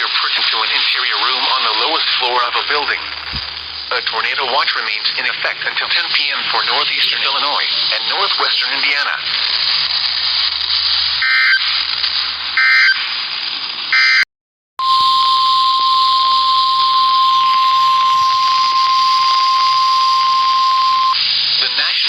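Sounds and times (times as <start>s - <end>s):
radio static: 0.0s - 13.2s, 14.8s - 22.0s
warbling digital data tones: 9.4s - 12.0s, 14.8s - 21.2s
steady warning alarm tone: 11.2s - 11.8s, 14.8s - 21.2s.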